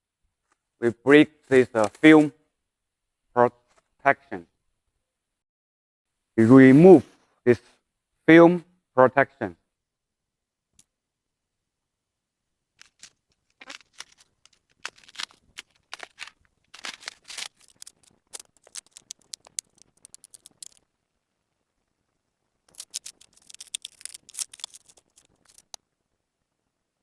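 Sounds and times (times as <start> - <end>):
plastic film crackling: 12.8 - 20.8, 22.7 - 25.8.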